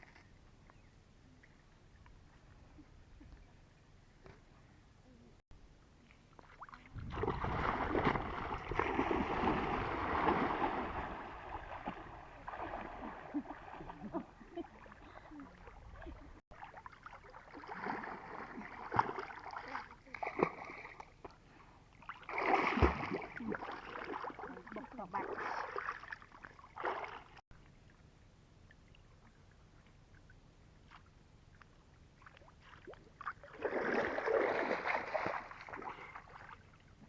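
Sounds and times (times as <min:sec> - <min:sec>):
water splashing: 0:06.1 - 0:21.1, 0:22.0 - 0:27.4, 0:32.2 - 0:36.9.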